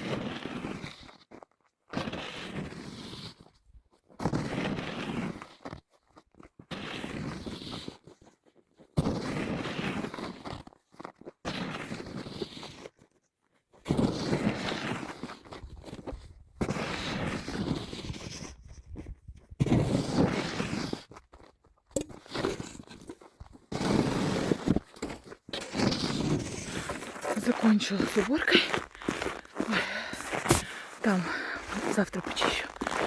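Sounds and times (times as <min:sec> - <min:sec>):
scraping and crunching strokes: 0:13.9 - 0:33.0.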